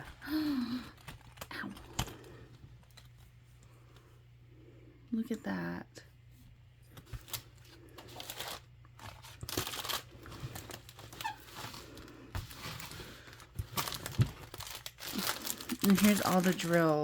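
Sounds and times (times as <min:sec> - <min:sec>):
plastic packaging crinkling: 0:00.0 - 0:03.3, 0:07.0 - 0:17.0.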